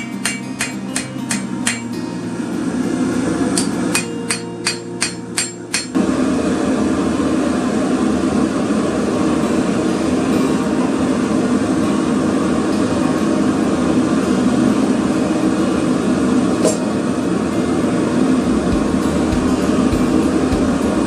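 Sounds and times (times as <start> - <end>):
hammer striking steel on anvil: 0.0 - 2.0, 3.6 - 6.0
steady rushing noise: 5.4 - 21.0.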